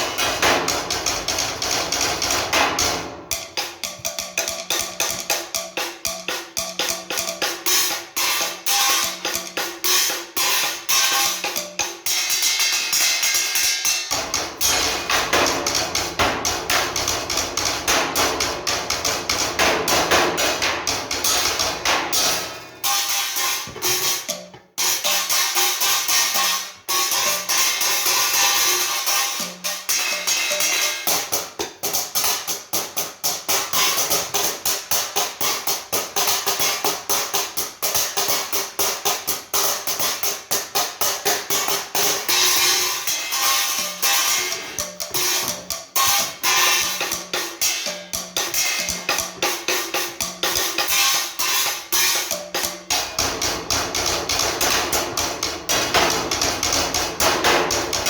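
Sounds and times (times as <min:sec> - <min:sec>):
light metal backing track: 0:00.0 - 0:10.1
drum kit playing fast: 0:00.0 - 0:58.0.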